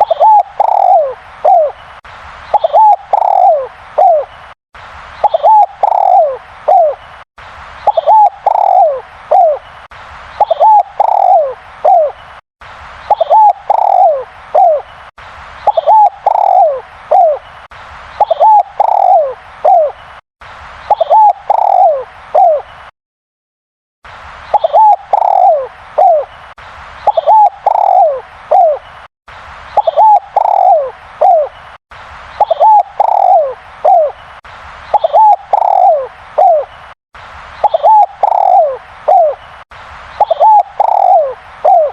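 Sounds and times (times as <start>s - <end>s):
dove cooing: 0.0s - 1.8s, 2.5s - 4.3s, 5.2s - 7.0s, 7.9s - 9.6s, 10.4s - 12.2s, 13.1s - 14.8s, 15.7s - 17.4s, 18.2s - 20.0s, 20.9s - 22.6s, 24.5s - 26.3s, 27.1s - 28.8s, 29.8s - 31.5s, 32.4s - 34.2s, 34.9s - 36.7s, 37.6s - 39.4s, 40.2s - 41.9s.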